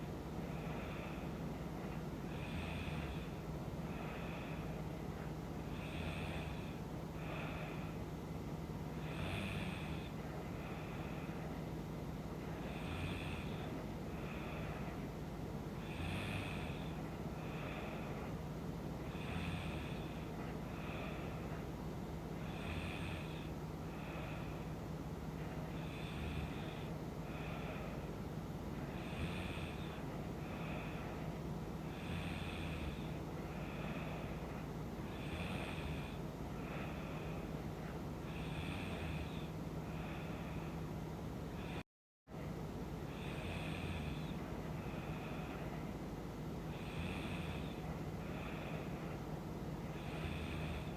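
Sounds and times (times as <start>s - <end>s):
steady low hum: 0.0s - 50.9s
woman snoring: 0.4s - 8.0s, 9.0s - 11.4s, 12.5s - 15.0s, 15.8s - 18.3s, 19.0s - 21.4s, 22.4s - 24.7s, 25.7s - 28.0s, 28.8s - 31.2s, 31.8s - 37.5s, 38.3s - 40.8s, 43.1s - 45.6s, 46.7s - 49.0s, 49.9s - 50.9s.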